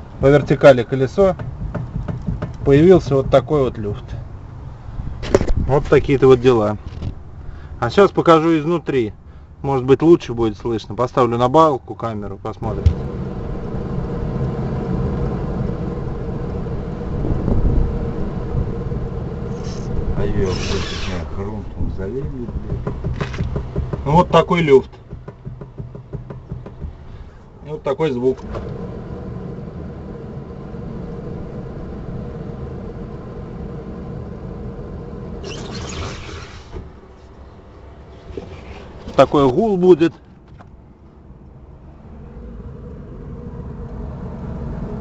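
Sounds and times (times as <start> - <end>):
wheel bearing humming drone: 12.7 - 24.1, 24.9 - 39.1, 40.6 - 45.0
wheel bearing humming: 12.7 - 27.7
low knock: 22.4 - 24.2, 24.9 - 27.1.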